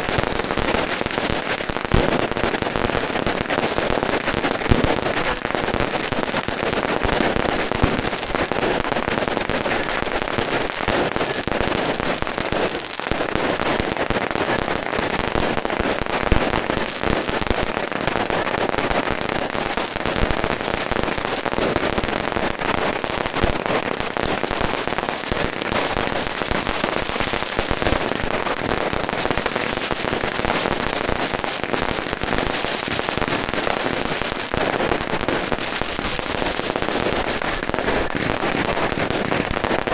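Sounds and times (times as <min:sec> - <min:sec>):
firecrackers crackling: 0:00.0 - 0:39.9.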